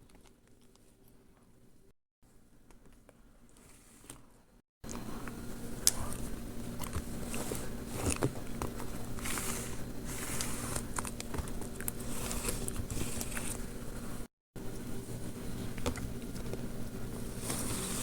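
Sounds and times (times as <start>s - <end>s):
paper rustling and crinkling: 17.3s - 18.0s.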